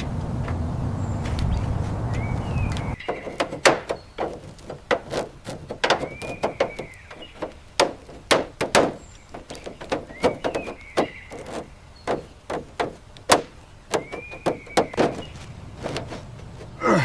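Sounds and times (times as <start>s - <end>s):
hand tools knocking and clanking: 3.0s - 16.8s.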